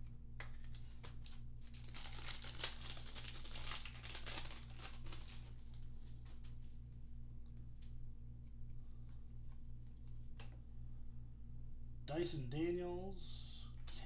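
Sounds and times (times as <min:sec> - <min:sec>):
foil wrapper tearing and crinkling: 0:00.6 - 0:06.4.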